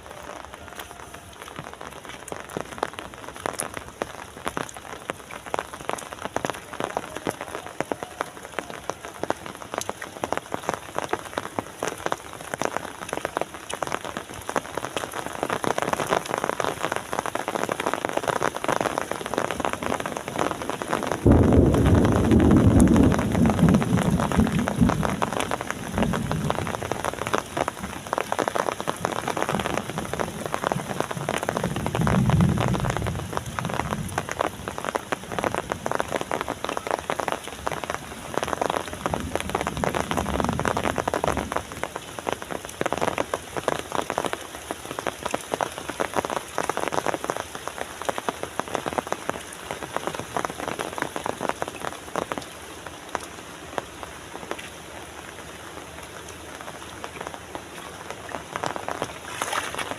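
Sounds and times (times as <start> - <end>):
rain falling: 0.0 - 59.9
low rumbling: 21.2 - 25.3.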